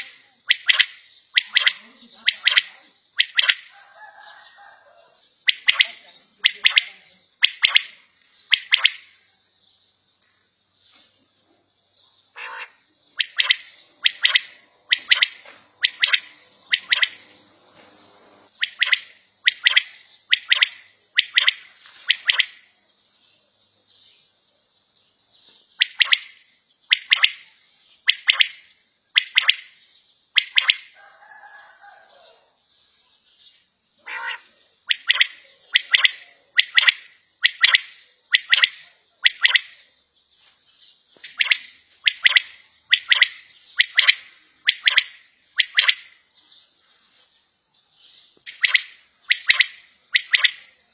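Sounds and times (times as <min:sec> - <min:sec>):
quail calling: 0:00.0 - 0:09.2, 0:12.3 - 0:17.5, 0:18.4 - 0:22.7, 0:34.0 - 0:39.8, 0:41.2 - 0:46.2, 0:48.5 - 0:50.8.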